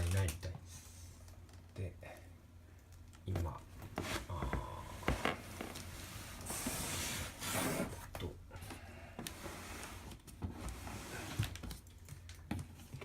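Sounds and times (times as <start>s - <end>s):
steady low hum: 0.0s - 13.0s
rubbing or scraping on a workbench: 5.1s - 8.0s, 9.3s - 11.5s.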